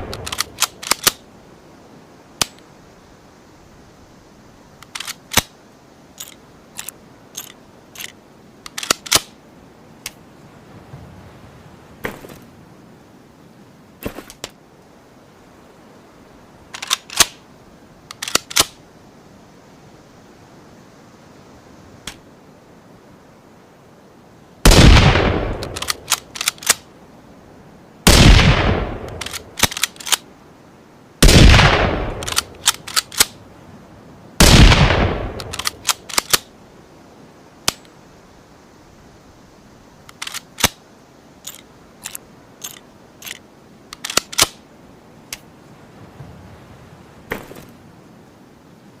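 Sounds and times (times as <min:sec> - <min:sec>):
rifle bolt clicks: 0:00.0 - 0:01.2, 0:04.8 - 0:05.5, 0:06.2 - 0:09.3, 0:16.8 - 0:17.4, 0:18.1 - 0:18.8, 0:25.6 - 0:26.8, 0:29.0 - 0:30.2, 0:32.1 - 0:33.4, 0:35.3 - 0:36.5, 0:40.0 - 0:40.8, 0:41.5 - 0:44.6
rifle handling clicks and clacks: 0:00.0 - 0:01.2, 0:04.8 - 0:05.6, 0:06.2 - 0:09.4, 0:16.7 - 0:17.4, 0:18.1 - 0:18.8, 0:25.5 - 0:26.9, 0:29.0 - 0:30.2, 0:32.1 - 0:33.4, 0:35.3 - 0:36.5, 0:37.6 - 0:37.9, 0:40.0 - 0:40.8, 0:41.4 - 0:44.6
rifle shots with echo: 0:24.7 - 0:25.8, 0:28.1 - 0:29.2, 0:31.2 - 0:32.5, 0:34.4 - 0:35.7.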